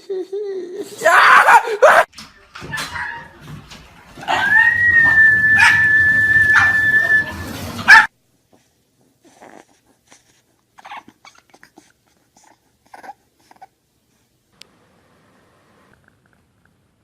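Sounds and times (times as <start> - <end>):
dog yelping: 1.1 - 2.1, 2.7 - 3.4, 4.2 - 8.1, 10.8 - 11.6
dog whining: 4.2 - 8.1, 9.2 - 13.7.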